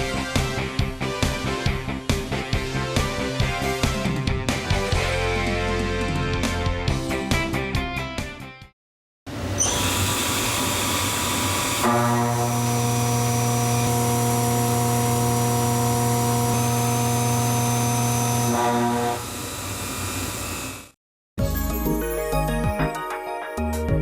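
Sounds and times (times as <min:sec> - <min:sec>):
end mill cutting metal hum: 0:09.3 - 0:21.0.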